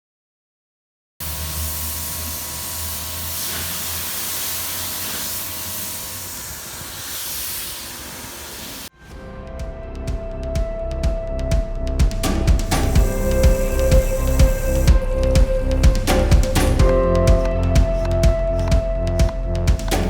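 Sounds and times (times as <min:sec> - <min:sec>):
cleaning spray hissing: 0:01.2 - 0:08.9, 0:12.3 - 0:16.9
low hum: 0:01.2 - 0:20.0
music: 0:08.9 - 0:20.0.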